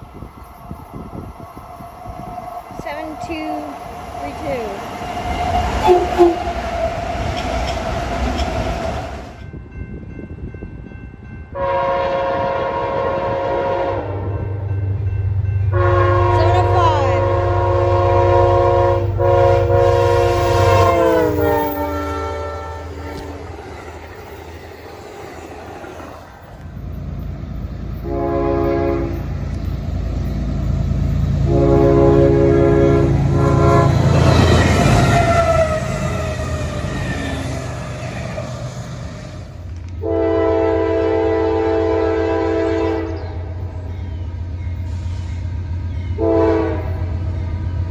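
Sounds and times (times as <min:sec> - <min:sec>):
train noise: 0:00.0 - 0:47.9
distant train horn: 0:02.8 - 0:09.4, 0:11.5 - 0:25.1, 0:27.9 - 0:29.8, 0:30.9 - 0:38.7, 0:39.3 - 0:47.9
locomotive air horn blast: 0:05.7 - 0:06.7, 0:11.6 - 0:14.4, 0:15.7 - 0:23.4, 0:28.0 - 0:29.3, 0:31.4 - 0:36.5, 0:40.0 - 0:43.2, 0:46.2 - 0:47.1.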